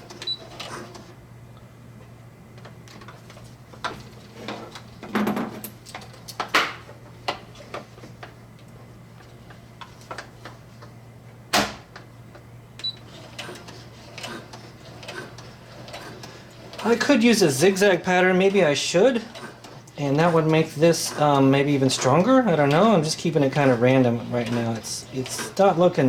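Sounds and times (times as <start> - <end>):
sewing machine stitching: 12.8 - 17.9, 19.0 - 25.8.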